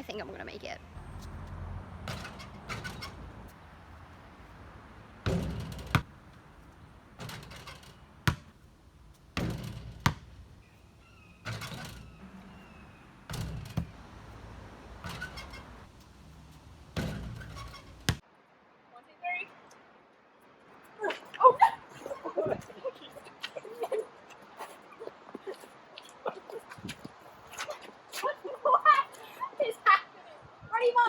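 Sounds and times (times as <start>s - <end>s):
sharp knocks and thuds: 1.0s - 4.6s, 5.2s - 10.8s, 11.4s - 18.2s.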